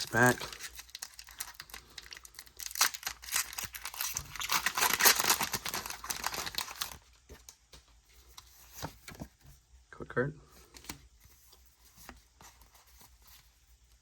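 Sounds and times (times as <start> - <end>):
foil wrapper crinkling and tearing: 0.0 - 7.0.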